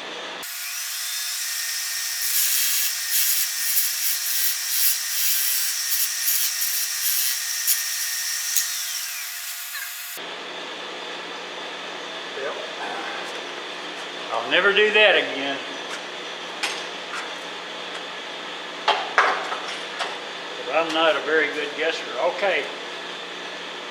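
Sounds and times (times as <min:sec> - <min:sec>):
wood lathe whine: 0:00.4 - 0:10.2.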